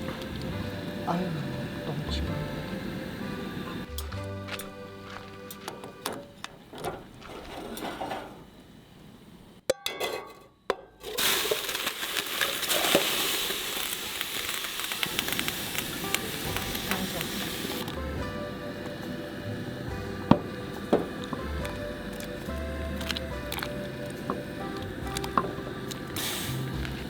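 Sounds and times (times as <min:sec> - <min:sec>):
background music: 0:00.0 - 0:06.8, 0:15.3 - 0:27.0
food sizzling and crackling: 0:11.0 - 0:27.0.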